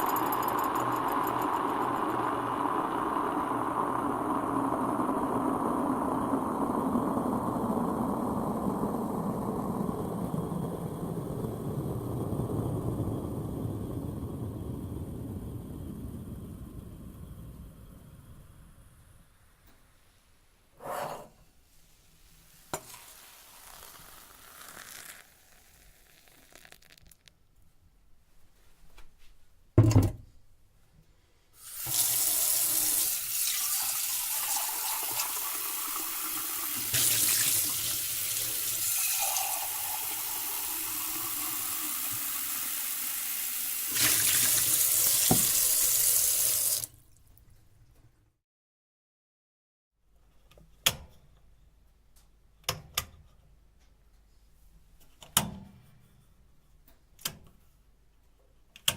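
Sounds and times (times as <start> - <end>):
kitchen tap running: 31.6 - 47.0.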